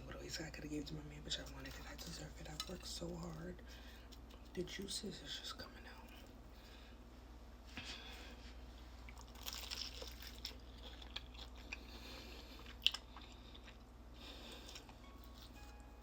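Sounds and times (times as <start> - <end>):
crunching and chewing fried chicken: 1.4 - 4.9, 7.8 - 16.0.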